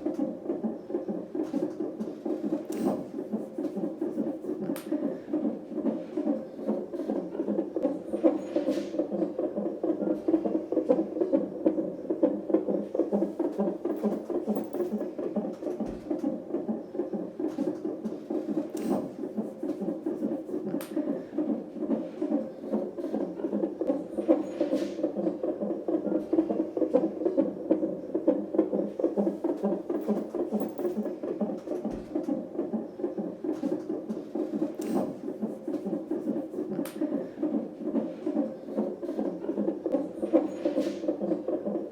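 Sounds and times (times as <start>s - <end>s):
fetal heartbeat whooshing: 0.0s - 41.9s
faint clicks: 4.7s - 5.0s.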